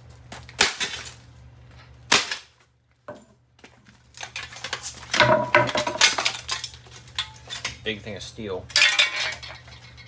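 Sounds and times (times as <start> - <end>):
metal fan parts clattering: 4.0 - 10.0.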